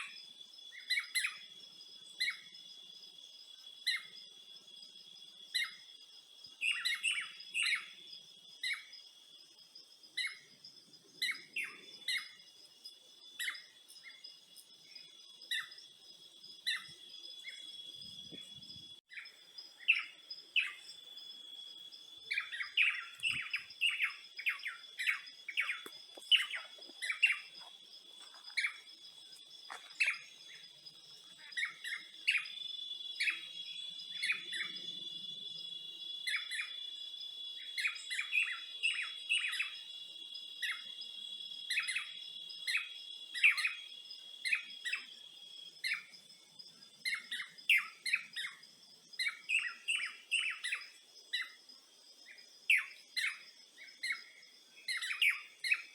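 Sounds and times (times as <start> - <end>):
birds chirping: 5.4 - 55.9.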